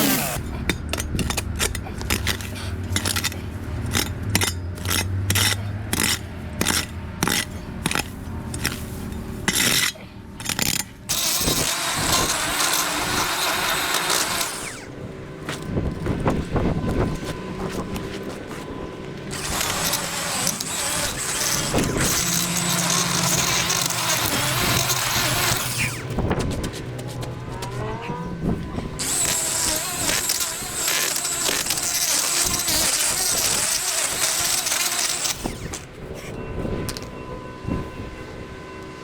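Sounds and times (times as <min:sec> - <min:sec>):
hissing cutting noise: 0:28.8 - 0:35.9.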